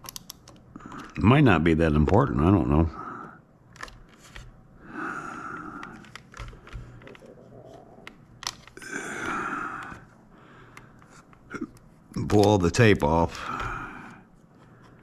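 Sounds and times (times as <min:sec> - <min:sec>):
plastic parts clicking: 0:00.0 - 0:01.2, 0:03.7 - 0:04.6, 0:05.5 - 0:10.1, 0:10.7 - 0:13.8.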